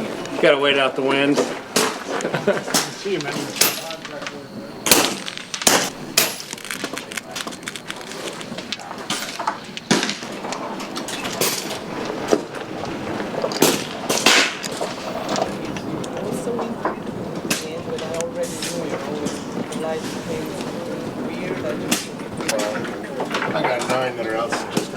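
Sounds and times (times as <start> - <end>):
steady background noise: 0.0 - 24.9
air rifles firing: 2.7 - 15.5.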